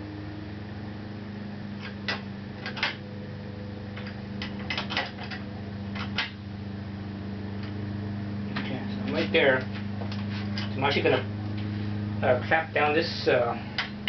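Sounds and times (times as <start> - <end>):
steady low hum: 0.0 - 14.0
metal parts clicking and knocking: 2.1 - 3.0, 4.0 - 5.4.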